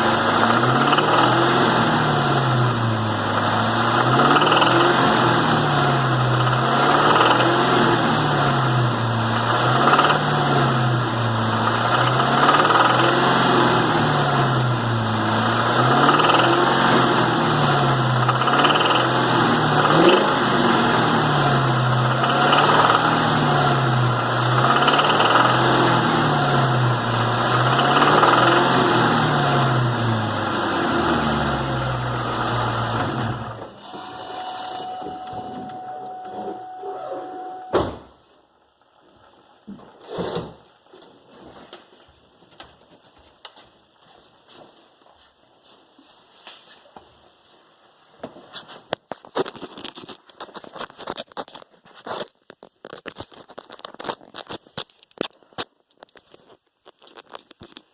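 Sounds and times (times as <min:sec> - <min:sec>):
car engine revving: 0:00.0 - 0:37.7
engine knocking: 0:00.4 - 0:01.5, 0:03.9 - 0:05.0, 0:09.5 - 0:10.3, 0:11.6 - 0:13.3, 0:15.9 - 0:16.8, 0:18.2 - 0:20.2, 0:22.0 - 0:23.2, 0:24.5 - 0:25.7, 0:27.5 - 0:28.7.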